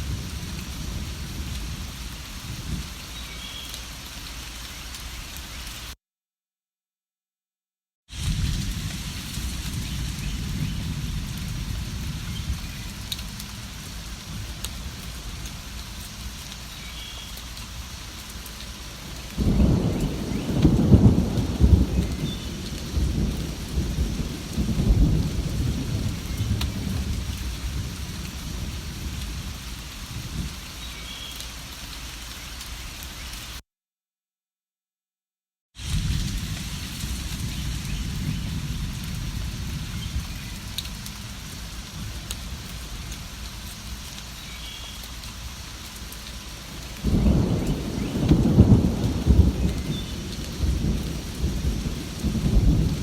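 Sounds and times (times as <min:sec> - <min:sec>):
rolling thunder: 0:00.0 - 0:02.9, 0:08.2 - 0:15.7, 0:19.1 - 0:30.6, 0:35.8 - 0:43.4, 0:46.7 - 0:53.0
steady rain: 0:00.0 - 0:06.0, 0:08.1 - 0:33.6, 0:35.8 - 0:53.0.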